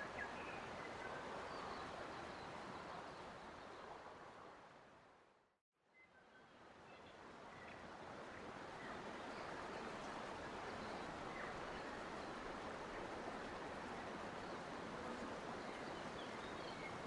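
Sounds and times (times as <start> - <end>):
stream water rushing: 7.2 - 17.0.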